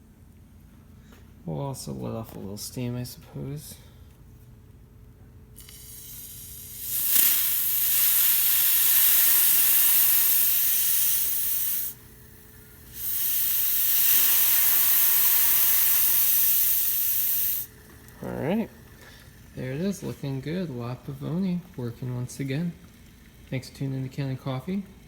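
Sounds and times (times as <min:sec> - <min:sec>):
steam hissing from espresso machine: 0:05.6 - 0:18.1, 0:18.8 - 0:25.0.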